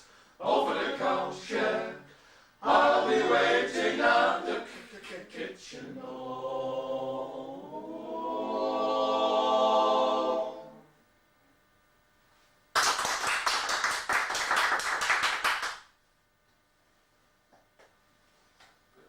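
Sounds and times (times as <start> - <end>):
vocal group singing a chord: 0.4 - 11.0
audience applauding: 12.8 - 15.9.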